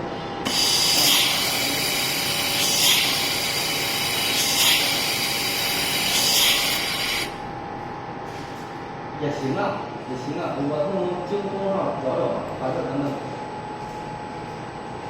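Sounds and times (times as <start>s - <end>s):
laser welding machine hiss: 0.4s - 7.4s.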